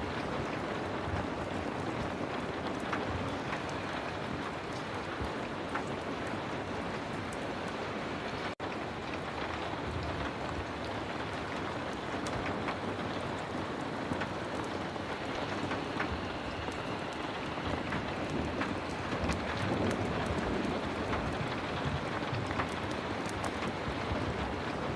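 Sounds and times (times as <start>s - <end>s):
heavy rain falling: 0.0s - 24.9s
sharp ticks and crackles: 8.7s - 24.9s.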